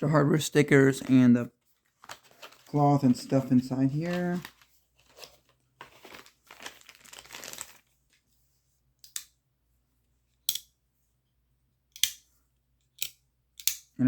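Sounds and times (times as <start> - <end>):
packaging crinkling: 0.9 - 8.2
pocketknife blade clicks: 13.0 - 13.9.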